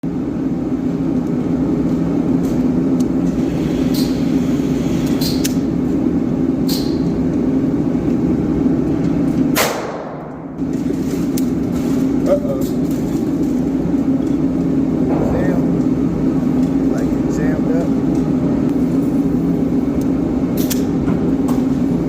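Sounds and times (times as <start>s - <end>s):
steady low rumble: 0.0s - 22.0s
pistol gunshot with ring: 9.6s - 10.3s.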